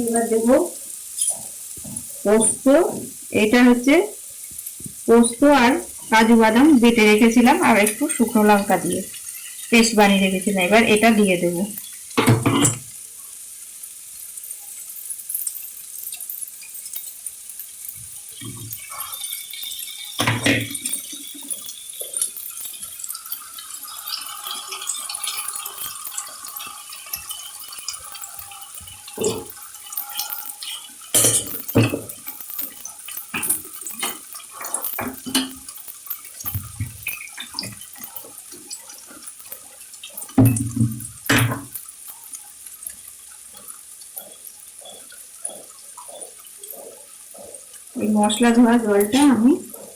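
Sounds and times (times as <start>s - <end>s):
water running into bowl: 0.0s - 13.0s, 14.1s - 49.9s
spoon scraping a bowl: 24.2s - 38.2s.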